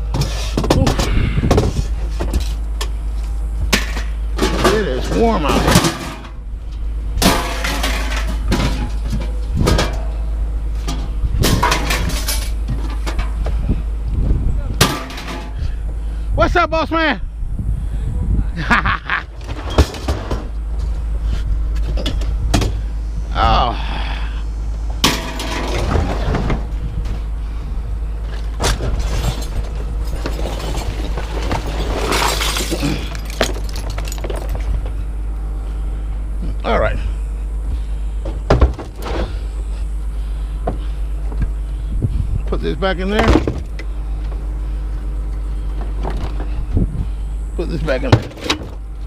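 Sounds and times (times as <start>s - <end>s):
low steady hum: 0.0s - 49.0s
steady low rumble: 0.0s - 49.0s
scrap metal clattering bangs: 3.7s - 6.4s, 7.2s - 13.4s, 14.8s - 15.7s, 25.0s - 26.8s.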